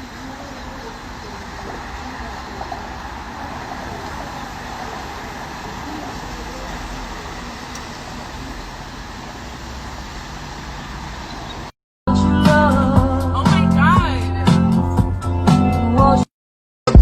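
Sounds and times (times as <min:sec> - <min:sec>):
car road rumble: 0:00.0 - 0:11.7
loud music with singing: 0:12.1 - 0:16.3.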